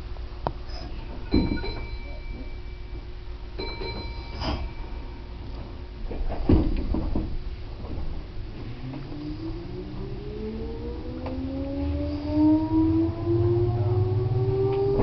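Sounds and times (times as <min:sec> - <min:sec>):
stationary train rumble and hum: 0:00.0 - 0:15.0
thumps inside train carriage: 0:01.1 - 0:02.0, 0:03.6 - 0:04.7, 0:05.5 - 0:08.3.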